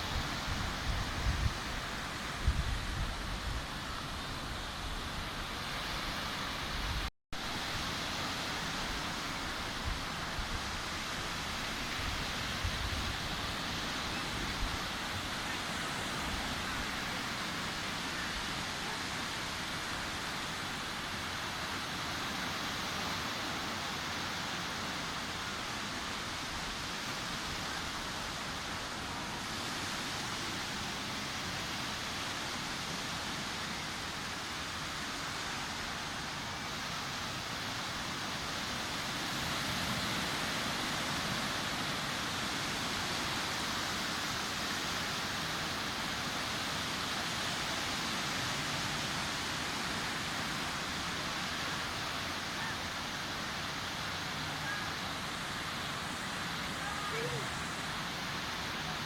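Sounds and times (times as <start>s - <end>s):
sea surf washing onto beach: 0.0s - 59.0s.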